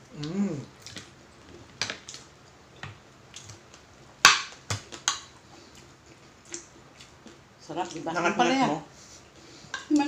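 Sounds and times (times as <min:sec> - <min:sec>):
person chewing: 0:00.0 - 0:03.9.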